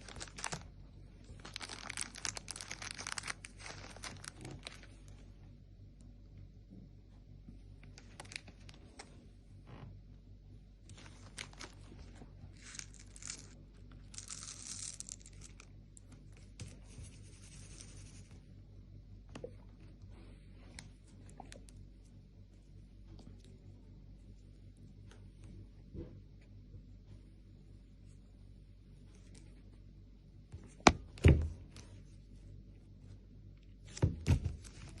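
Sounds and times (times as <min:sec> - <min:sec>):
slime crackling when squished: 0:01.4 - 0:04.9.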